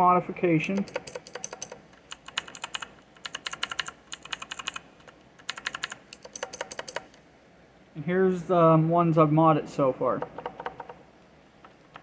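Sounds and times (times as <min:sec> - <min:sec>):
mechanical keyboard typing clicks: 0:00.7 - 0:07.2, 0:10.2 - 0:11.0.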